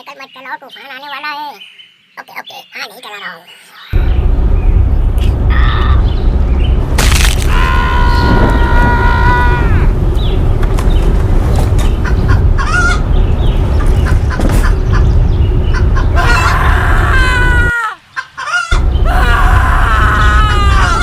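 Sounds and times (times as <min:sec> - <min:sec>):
loud wind rushing: 0:04.0 - 0:17.7
rooster crowing: 0:07.5 - 0:09.9, 0:16.2 - 0:21.0
hens clucking: 0:11.7 - 0:18.8.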